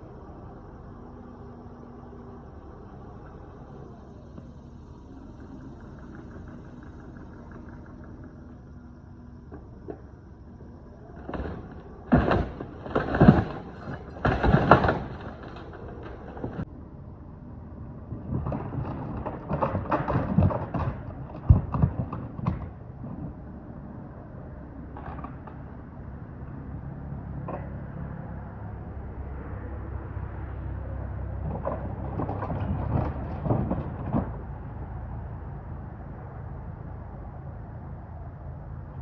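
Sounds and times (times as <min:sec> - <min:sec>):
mini excavator humming: 0:00.0 - 0:39.0
wooden boards crashing and cracking: 0:11.1 - 0:16.6, 0:18.4 - 0:22.8.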